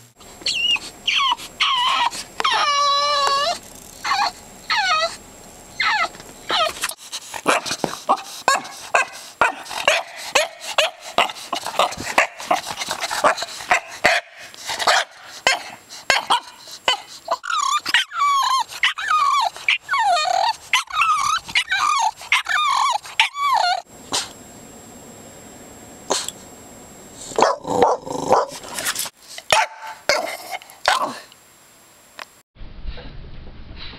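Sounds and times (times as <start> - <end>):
dog whining: 0.4 - 5.2, 5.8 - 7.0, 16.9 - 23.9
dog yipping and barking: 0.4 - 5.2, 5.8 - 6.8, 7.4 - 12.5, 13.2 - 23.9, 27.4 - 28.6, 29.5 - 30.3.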